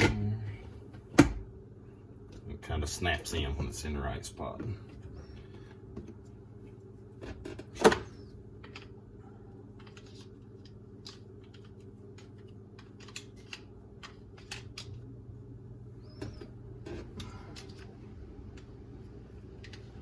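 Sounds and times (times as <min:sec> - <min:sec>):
steady low hum: 0:00.0 - 0:20.0
plastic parts clicking and tapping: 0:09.8 - 0:14.9.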